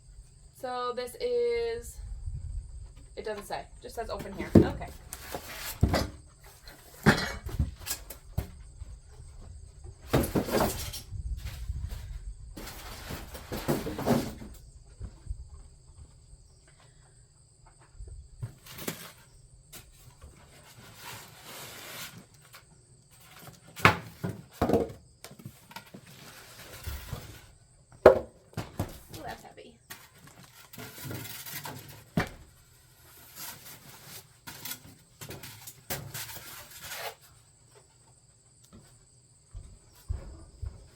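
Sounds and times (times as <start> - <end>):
packaging rustling and scraping: 4.4 - 7.0, 20.4 - 24.2, 25.4 - 27.5, 29.9 - 37.4.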